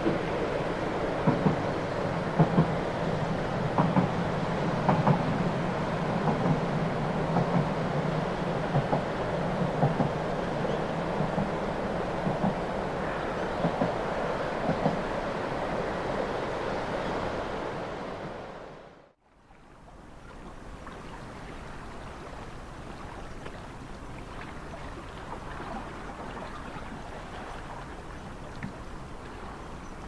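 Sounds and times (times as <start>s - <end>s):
railcar rumbling by: 0.0s - 19.0s.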